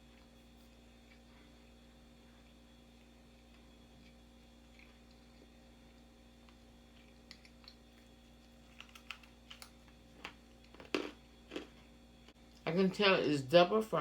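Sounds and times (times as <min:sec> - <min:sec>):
crunching fried chicken: 0:00.0 - 0:12.4.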